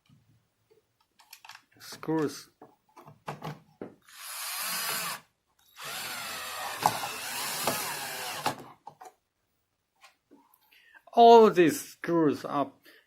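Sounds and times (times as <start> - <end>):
cordless drill driving screws: 4.1 - 8.6.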